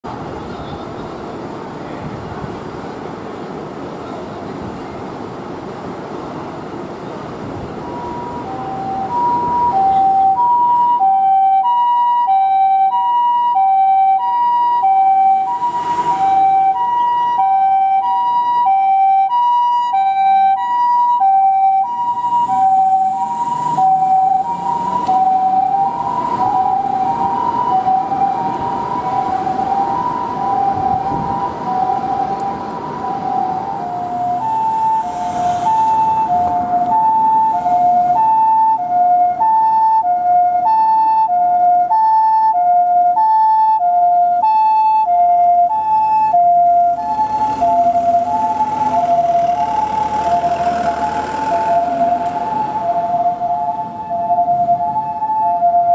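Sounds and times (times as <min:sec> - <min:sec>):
two-tone ambulance siren: 0:07.4 - 0:55.9.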